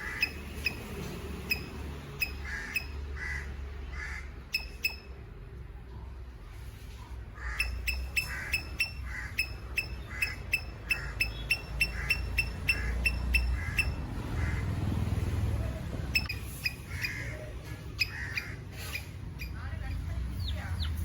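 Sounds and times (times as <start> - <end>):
squirrel chip call: 0.0 - 5.1, 7.4 - 14.6, 16.2 - 19.6.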